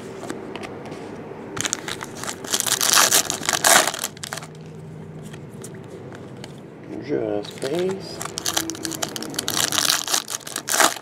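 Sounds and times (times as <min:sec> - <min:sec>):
packaging crinkling and rustling: 0:01.6 - 0:04.6, 0:07.4 - 0:11.0.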